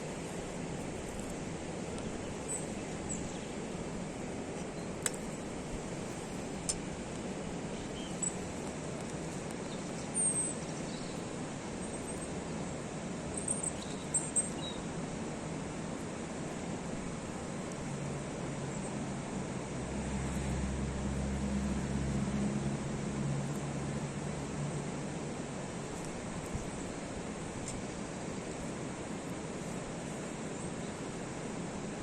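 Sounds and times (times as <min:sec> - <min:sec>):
faint bird chirps: 0:07.7 - 0:08.4, 0:09.6 - 0:12.3, 0:13.3 - 0:14.9.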